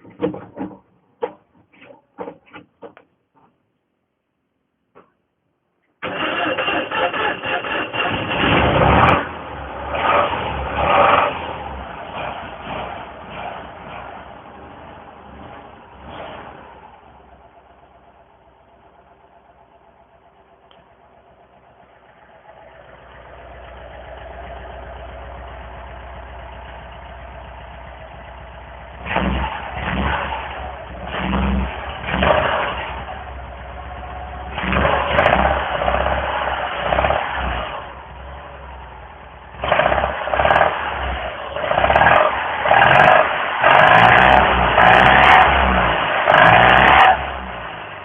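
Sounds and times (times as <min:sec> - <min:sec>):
car engine idling and revving: 0:06.0 - 0:48.0.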